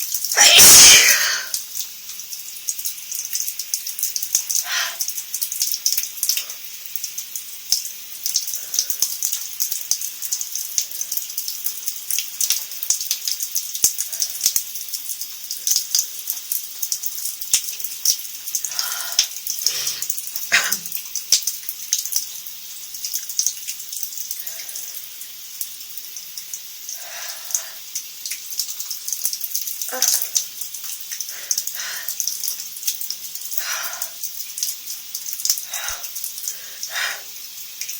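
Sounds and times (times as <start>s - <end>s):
shower water running: 0.0s - 37.9s
person making brief voiced sounds: 0.4s - 1.5s, 20.5s - 20.9s.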